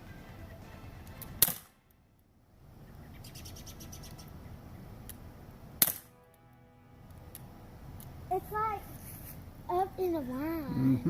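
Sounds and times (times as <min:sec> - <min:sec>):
pistol shot: 0:01.4 - 0:01.8.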